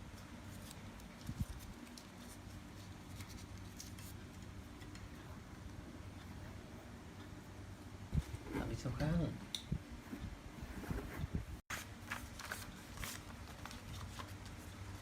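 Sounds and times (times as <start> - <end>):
steady low hum: 0.0 - 15.0
paper being handled and folded: 0.1 - 5.2, 11.7 - 15.0.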